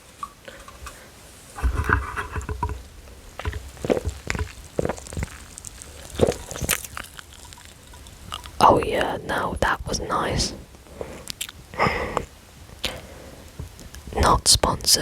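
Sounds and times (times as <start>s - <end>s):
person sipping a drink: 0.1s - 8.7s, 10.8s - 13.2s
gulping swallows: 3.1s - 8.8s.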